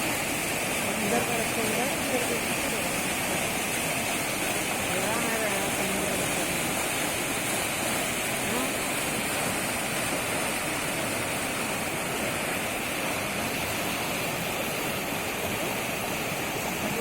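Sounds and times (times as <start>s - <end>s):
floodwater rushing: 0.0s - 17.0s.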